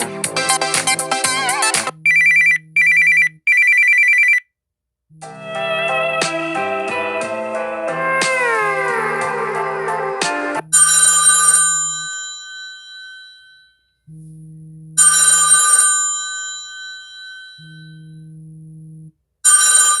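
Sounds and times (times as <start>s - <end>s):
bell-like ringtone chime: 10.7s - 14.0s, 15.0s - 18.2s, 19.5s - 20.0s
gliding ringtone notes: 15.0s - 18.2s.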